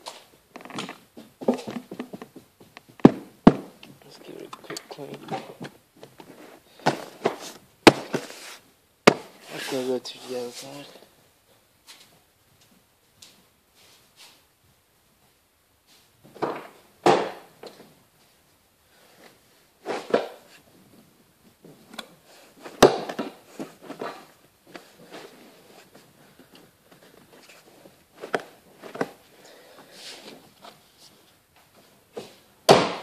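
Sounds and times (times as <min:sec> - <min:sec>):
rustling: 0:00.0 - 0:11.2, 0:17.7 - 0:32.5.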